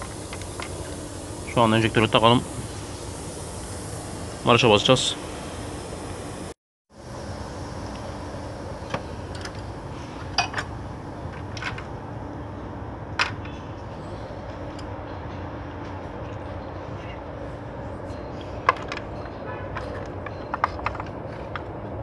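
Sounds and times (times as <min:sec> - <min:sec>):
workshop hum: 0:00.0 - 0:22.0.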